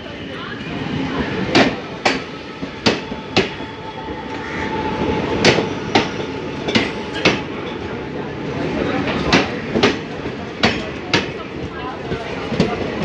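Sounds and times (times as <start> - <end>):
train rumble: 0.0 - 13.0
train wheels clacking over rail joints: 5.4 - 7.9.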